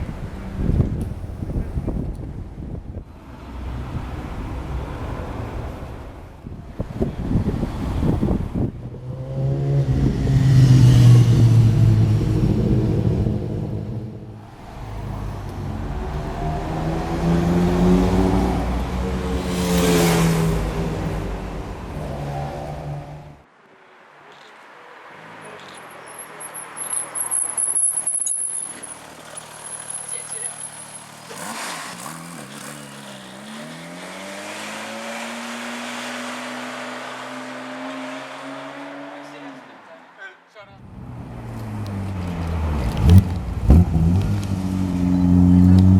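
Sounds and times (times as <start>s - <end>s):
sports car engine accelerating: 8.9s - 23.4s, 40.8s - 45.9s.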